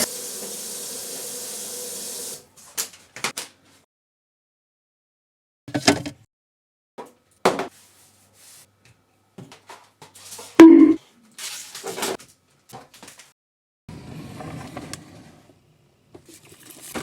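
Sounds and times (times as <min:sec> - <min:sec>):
knocks and clicks of kitchen items: 0:09.4 - 0:11.0.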